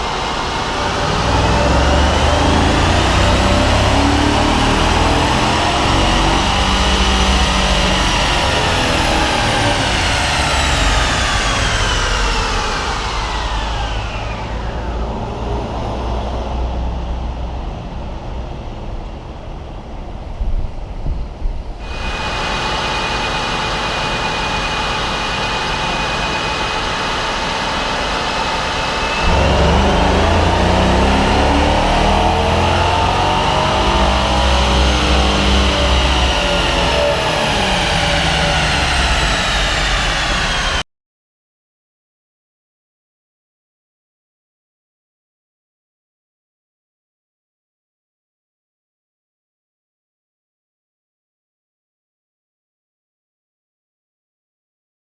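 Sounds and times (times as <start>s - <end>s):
truck engine revving on dyno: 0.0s - 19.6s, 21.8s - 40.8s.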